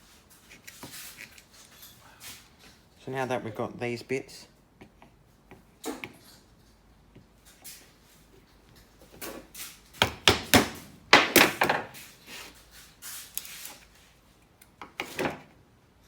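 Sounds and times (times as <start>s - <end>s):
blade knocking and scraping wood: 10.0s - 12.0s.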